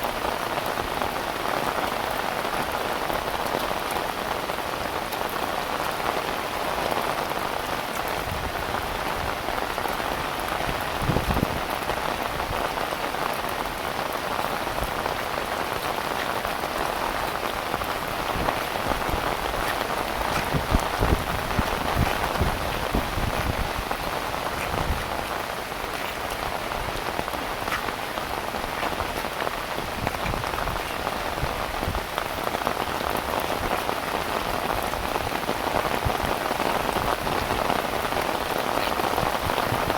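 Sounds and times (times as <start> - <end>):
heavy rain falling: 0.0 - 39.9
low gusts or splashes: 14.7 - 39.9.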